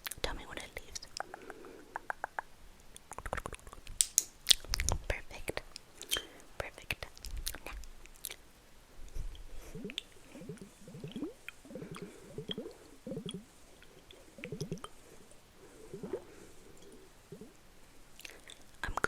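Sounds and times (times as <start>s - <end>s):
faint clicks: 1.0s - 4.9s
soft wet squishing: 2.8s - 19.0s.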